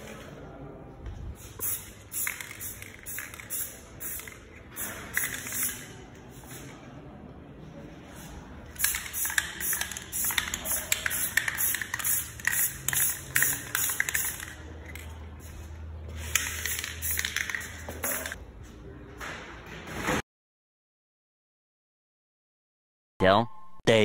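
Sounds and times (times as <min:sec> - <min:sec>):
aerosol can spraying: 0:01.5 - 0:05.9, 0:08.8 - 0:14.6.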